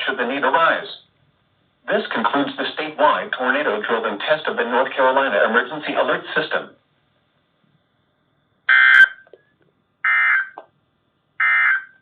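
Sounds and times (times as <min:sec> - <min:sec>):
screechy digital data bursts: 0:08.7 - 0:09.2.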